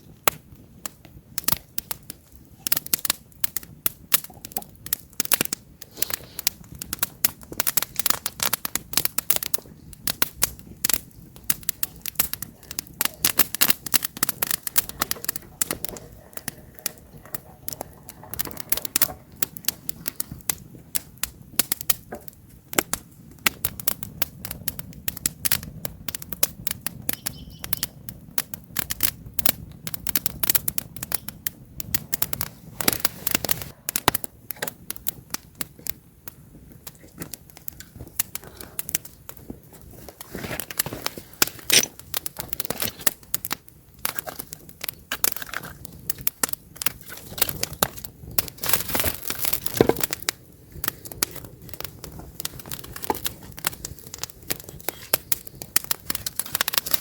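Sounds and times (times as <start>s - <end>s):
campfire crackling and popping: 0.0s - 57.0s
low hiss of flame: 0.0s - 57.0s.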